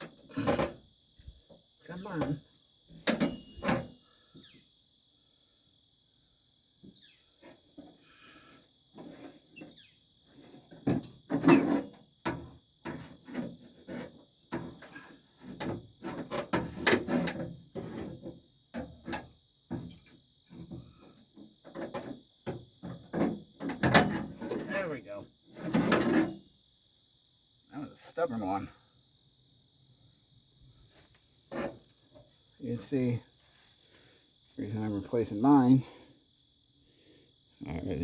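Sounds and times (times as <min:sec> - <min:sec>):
metal knocks clanks and scrapes: 0:00.1 - 0:00.8, 0:03.0 - 0:04.0, 0:09.0 - 0:09.7, 0:10.3 - 0:24.9, 0:25.5 - 0:26.4, 0:31.5 - 0:32.4.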